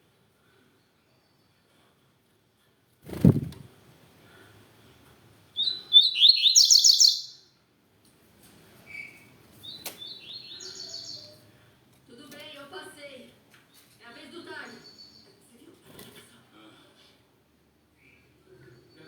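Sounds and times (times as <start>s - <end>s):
bird singing high whistled notes: 5.6s - 7.4s, 9.0s - 11.4s.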